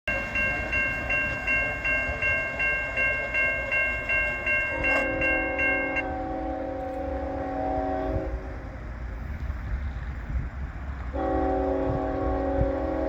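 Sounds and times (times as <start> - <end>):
railroad crossing bell ringing: 0.1 - 8.6
locomotive air horn: 4.7 - 8.8, 11.1 - 13.0.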